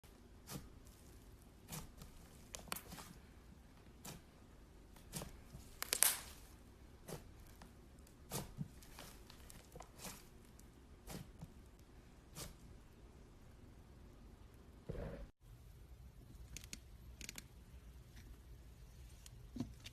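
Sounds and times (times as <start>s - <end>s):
slime squelching: 0.1s - 13.4s.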